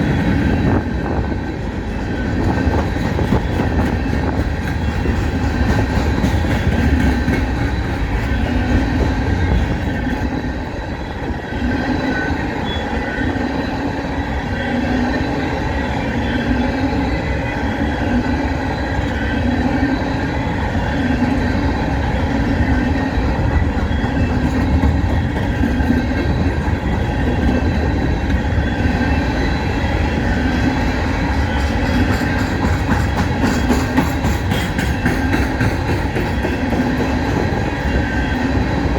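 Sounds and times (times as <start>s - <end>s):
rail clatter: 0.0s - 10.7s, 20.7s - 38.9s
train wheels rumbling on rail: 0.0s - 38.9s.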